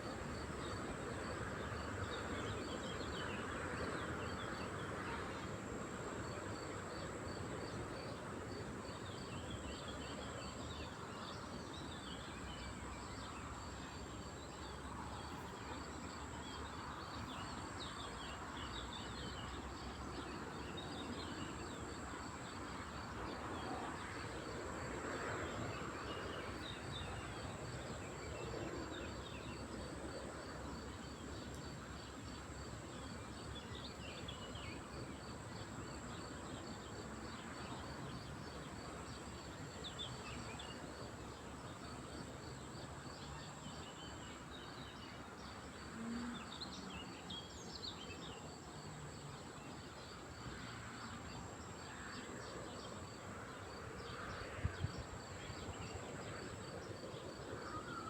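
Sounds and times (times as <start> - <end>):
songbirds chirping: 25.3 - 58.0.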